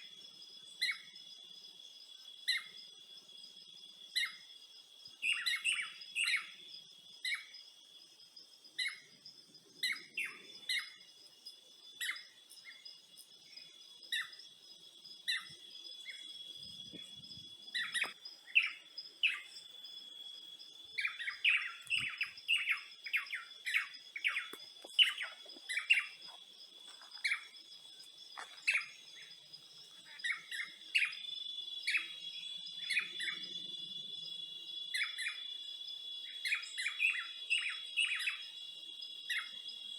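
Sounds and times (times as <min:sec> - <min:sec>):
small birds chirping: 0:00.0 - 0:39.9
high-pitched insect drone: 0:04.1 - 0:39.9.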